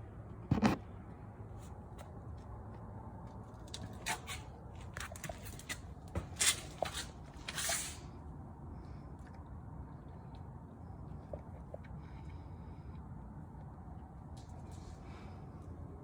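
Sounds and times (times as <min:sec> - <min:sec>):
low steady rumble: 0:07.2 - 0:16.0.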